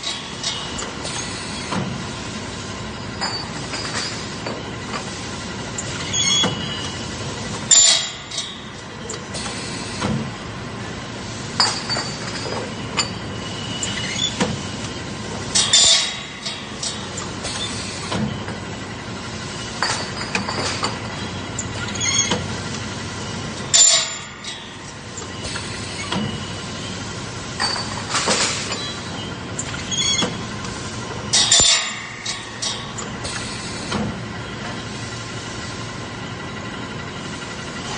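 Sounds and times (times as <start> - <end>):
metallic clinks and clanks: 31.3 - 33.1.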